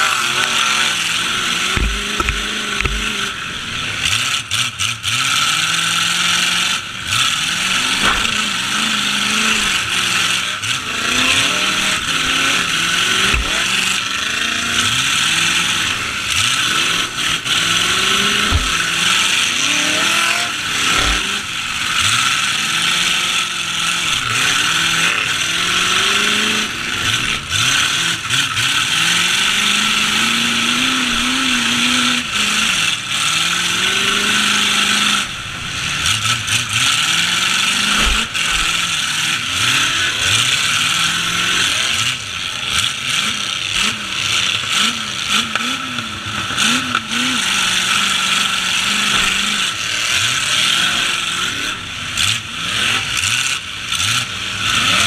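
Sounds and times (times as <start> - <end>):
truck engines revving: 0.0 - 55.0
heavy collision thuds: 1.8 - 3.4, 18.3 - 19.1.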